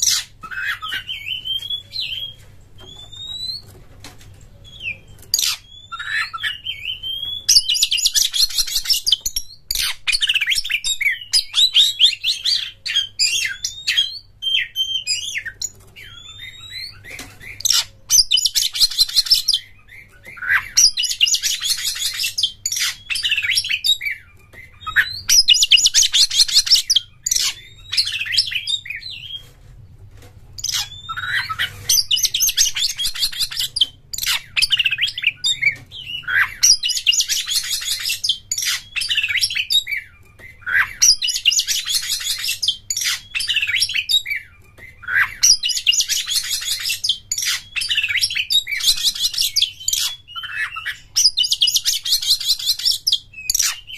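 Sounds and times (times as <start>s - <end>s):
bird whistling and buzzing rattles: 0.0s - 3.8s.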